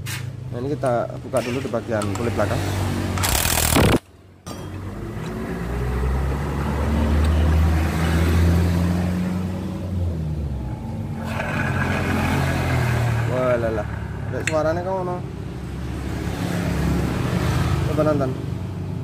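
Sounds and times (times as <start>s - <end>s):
scooter engine revving: 2.8s - 4.0s, 11.0s - 17.4s.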